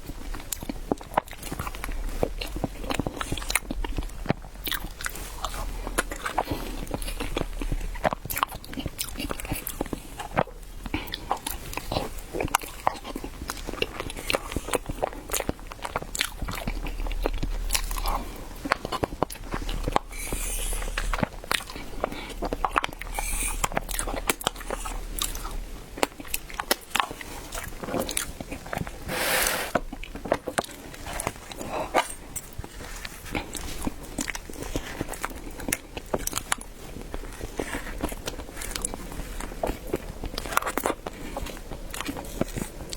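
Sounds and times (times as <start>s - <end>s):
biting and chewing bread: 0.0s - 42.9s
wet mouth clicks: 14.3s - 27.1s.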